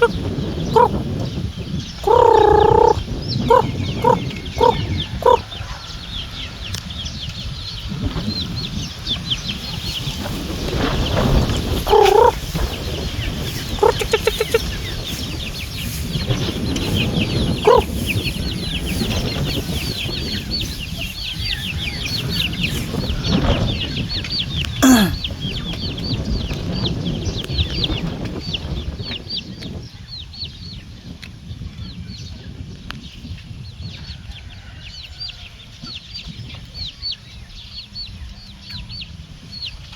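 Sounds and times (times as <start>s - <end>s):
chickens clucking: 0.0s - 1.4s, 2.0s - 6.5s, 8.0s - 25.7s
chicks peeping: 0.0s - 32.4s.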